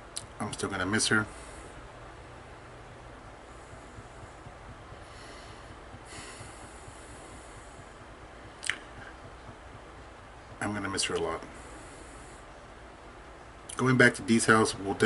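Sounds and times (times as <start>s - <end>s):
low room hiss: 0.0s - 15.0s
person sniffling: 5.1s - 7.9s.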